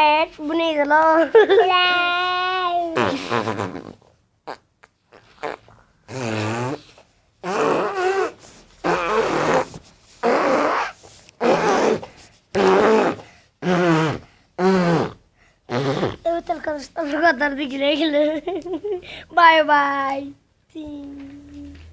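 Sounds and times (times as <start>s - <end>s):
fart sound effects: 2.9s - 16.3s.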